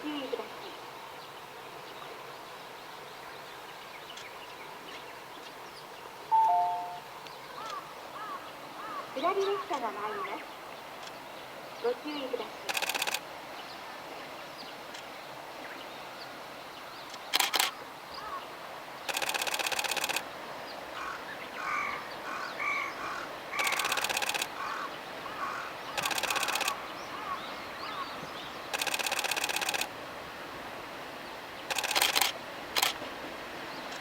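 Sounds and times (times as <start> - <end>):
birds calling: 3.0 - 29.9
camera shutter rapid bursts: 12.7 - 13.2, 17.4 - 17.7, 19.1 - 20.2, 23.6 - 24.6, 26.0 - 26.8, 28.7 - 29.9, 31.7 - 33.0.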